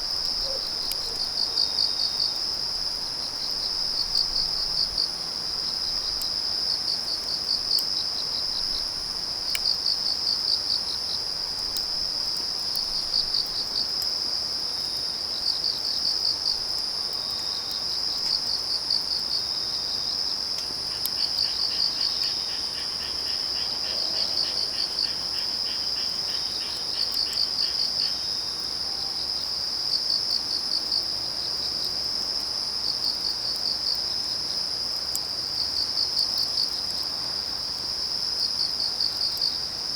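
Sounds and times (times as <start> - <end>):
wood fire crackles: 0.0 - 23.7
crickets trilling: 0.0 - 39.9
faint pulsed insect song: 0.0 - 39.9
insects pulsed chirping: 20.1 - 28.3.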